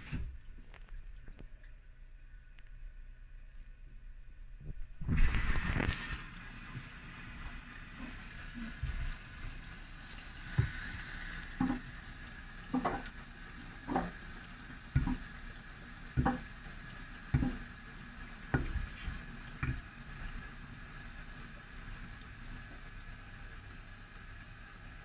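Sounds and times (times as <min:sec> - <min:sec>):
washing machine drum sloshing: 0:04.7 - 0:23.5.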